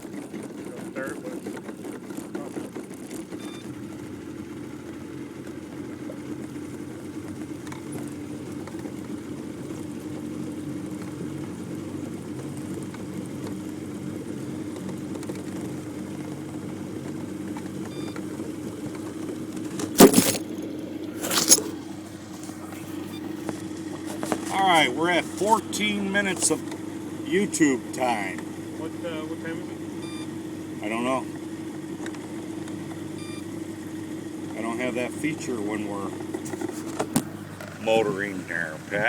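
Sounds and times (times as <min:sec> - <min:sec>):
boat motor humming: 0:00.0 - 0:39.0.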